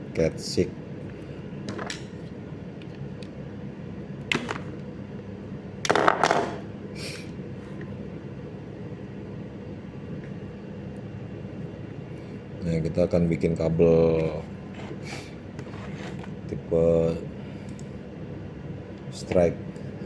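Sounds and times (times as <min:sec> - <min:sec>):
room hum: 0:00.0 - 0:20.0.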